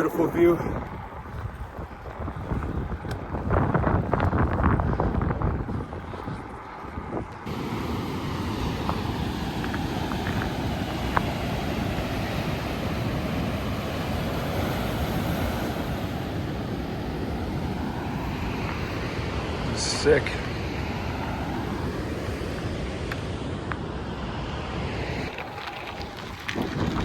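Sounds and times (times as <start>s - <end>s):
wind on the microphone: 0.0s - 7.7s, 24.7s - 27.0s
ocean surf: 7.4s - 27.0s.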